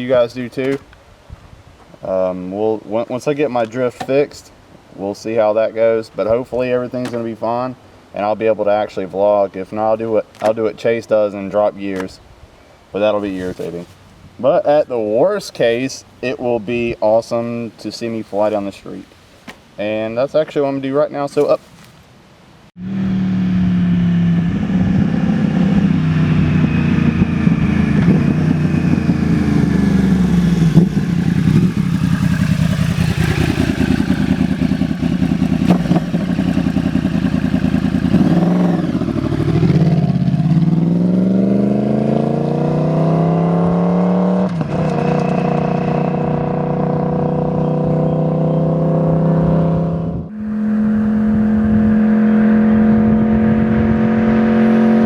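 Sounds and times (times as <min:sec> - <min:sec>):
motorcycle engine revving: 0:22.8 - 0:55.0.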